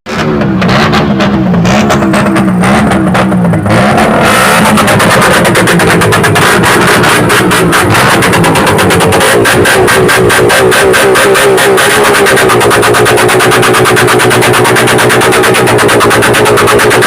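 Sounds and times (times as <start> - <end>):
loud electronic dance music: 4.3 - 17.0.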